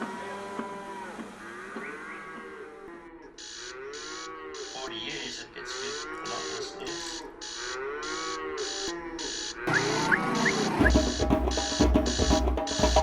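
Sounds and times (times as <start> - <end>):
high pulsing hiss: 0.0 - 13.0
cattle mooing: 0.2 - 9.8.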